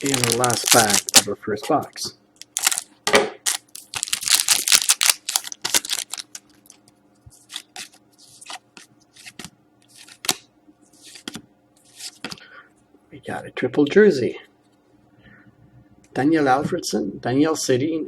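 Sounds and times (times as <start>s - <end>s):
card pack wrapper tearing: 0.0s - 1.3s, 2.4s - 6.8s.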